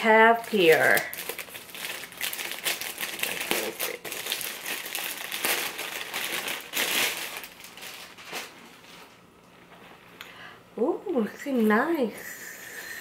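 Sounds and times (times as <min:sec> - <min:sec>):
packaging crinkling and rustling: 0:00.3 - 0:09.3.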